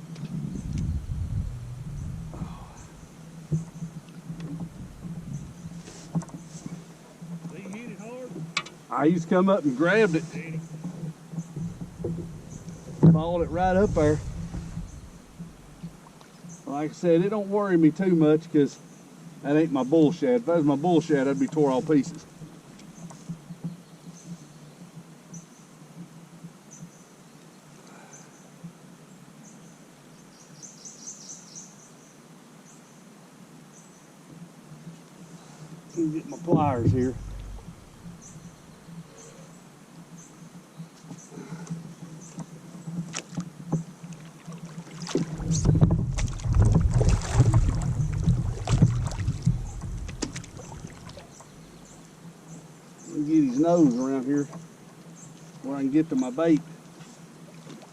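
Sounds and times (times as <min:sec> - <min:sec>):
insects chirping: 0:00.0 - 0:09.2, 0:35.8 - 0:41.3, 0:43.8 - 0:53.9
water splashing against kayak: 0:11.6 - 0:16.2, 0:36.2 - 0:38.6, 0:42.4 - 0:52.1, 0:57.4 - 0:57.9
knocks on kayak hull: 0:36.4 - 0:38.4, 0:45.1 - 0:51.2.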